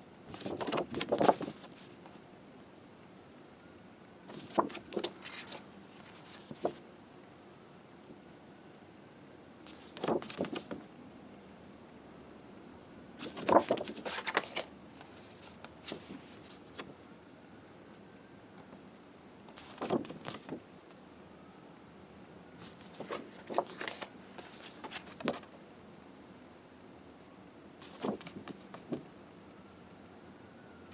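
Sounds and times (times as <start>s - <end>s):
postcards rustling: 0.3s - 2.2s, 4.3s - 6.8s, 9.7s - 10.9s, 13.2s - 16.9s, 19.5s - 20.6s, 22.6s - 25.5s, 27.8s - 29.0s.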